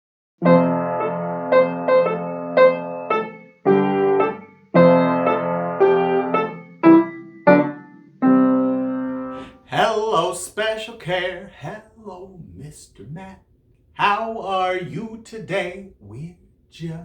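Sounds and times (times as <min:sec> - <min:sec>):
piano chords and melody: 0:00.4 - 0:09.6.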